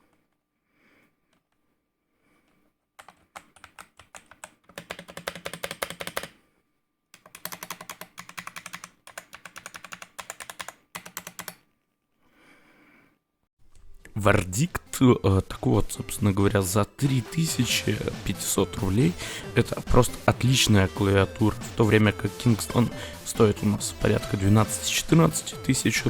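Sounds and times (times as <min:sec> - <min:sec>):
typing on computer keyboard: 0:03.0 - 0:06.4, 0:07.2 - 0:11.6.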